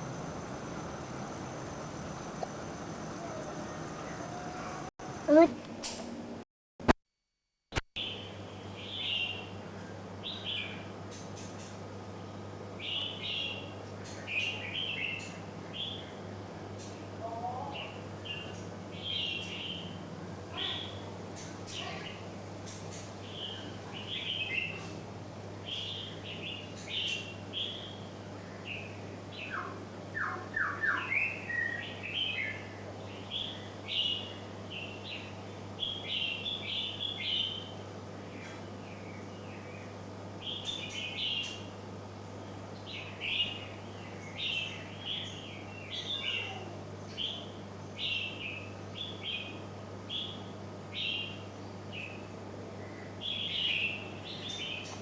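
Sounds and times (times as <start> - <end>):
steady low hum: 0.0 - 6.4
small birds chirping: 8.0 - 25.0, 25.6 - 55.0.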